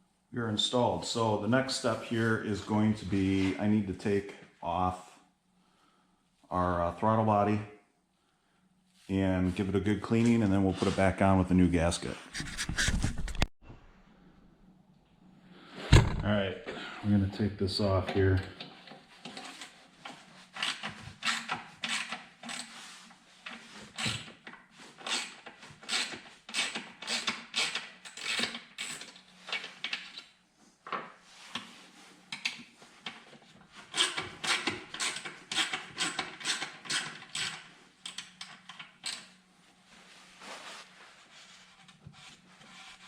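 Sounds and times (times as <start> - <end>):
hand tools clicking and clattering: 33.9 - 39.3.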